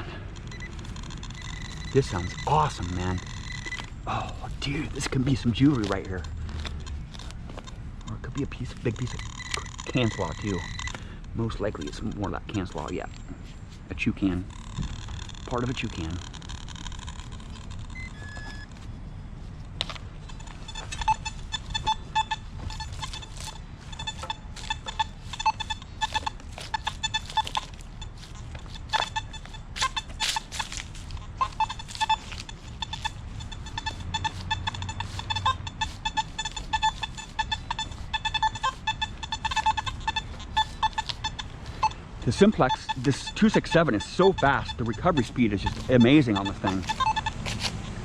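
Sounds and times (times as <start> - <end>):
metal detector beeps: 0.0 - 18.8, 19.8 - 48.0.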